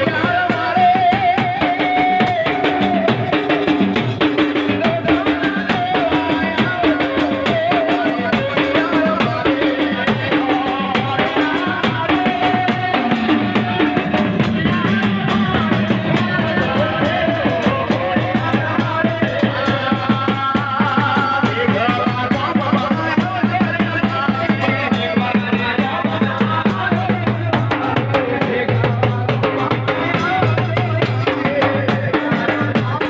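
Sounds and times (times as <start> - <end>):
devotional folk music: 0.0 - 33.0
drum beat: 0.0 - 33.0.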